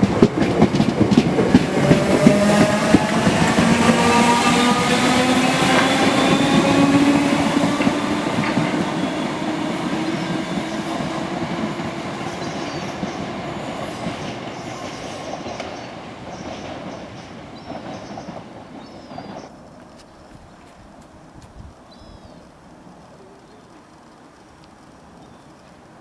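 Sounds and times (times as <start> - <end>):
electric train motor whine: 1.7 - 12.1.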